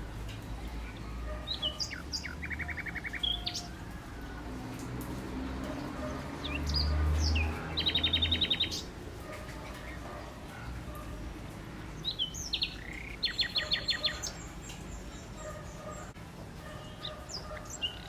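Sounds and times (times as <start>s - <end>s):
songbirds singing with trills: 0.0s - 18.0s.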